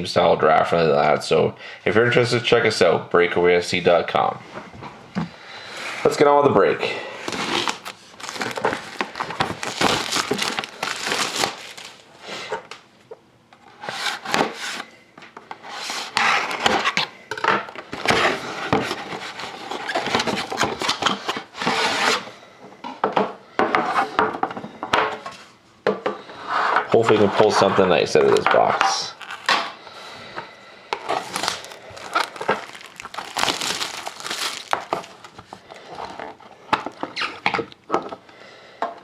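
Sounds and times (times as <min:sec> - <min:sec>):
hands unpacking a tin box: 0:07.2 - 0:12.0, 0:28.3 - 0:29.8, 0:31.0 - 0:38.2.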